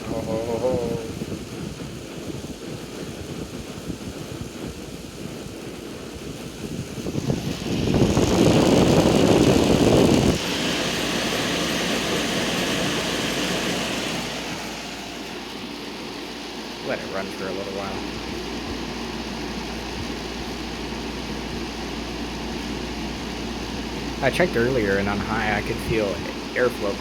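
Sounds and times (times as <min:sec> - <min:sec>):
air conditioner fan rushing air: 0:00.0 - 0:27.0.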